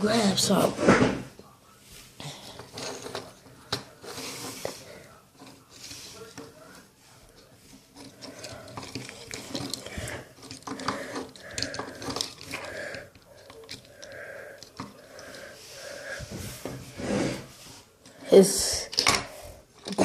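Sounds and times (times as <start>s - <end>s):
clicks and knocks of hard objects: 7.9s - 15.4s, 18.8s - 20.0s.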